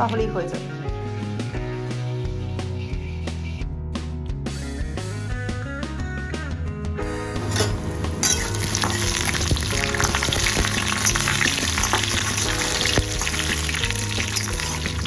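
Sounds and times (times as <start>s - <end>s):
frying in hot oil sizzling: 7.4s - 15.0s.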